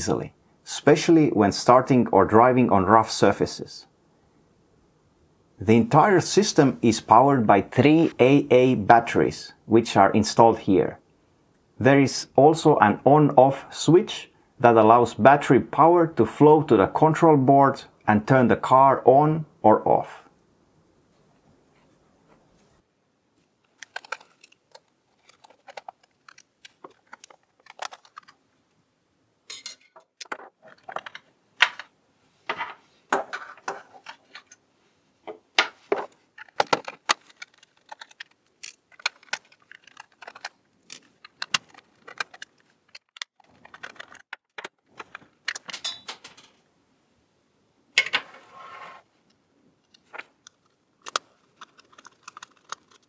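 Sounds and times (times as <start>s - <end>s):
plastic toy remote being handled: 23.6s - 28.4s, 36.0s - 45.8s, 49.9s - 53.0s.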